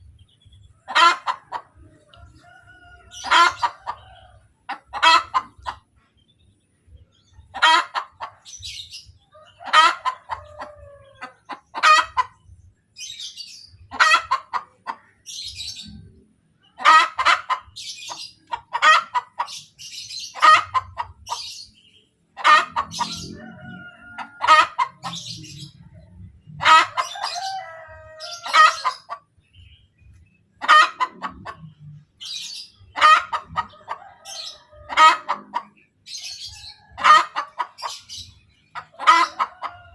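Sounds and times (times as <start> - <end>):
hen cackling: 0.2 - 5.9, 7.1 - 12.4, 13.0 - 21.8, 22.4 - 29.4, 30.6 - 39.9
faint high-pitched hen calls: 0.8 - 5.8, 9.2 - 12.4, 22.4 - 29.3, 32.9 - 38.1, 38.8 - 39.9.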